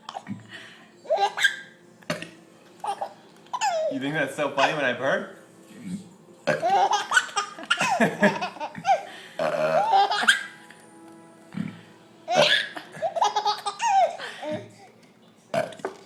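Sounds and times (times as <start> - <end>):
baby laughing: 2.8 - 3.9, 6.6 - 10.6, 12.3 - 14.5.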